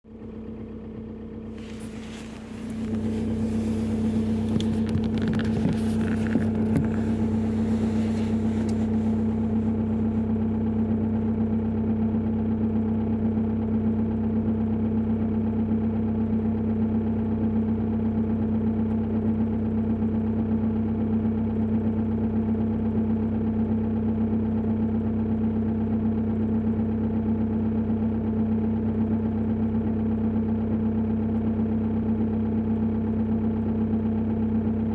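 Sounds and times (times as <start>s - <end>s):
diesel engine idling with knock: 0.1s - 13.2s
rustling: 1.6s - 10.2s.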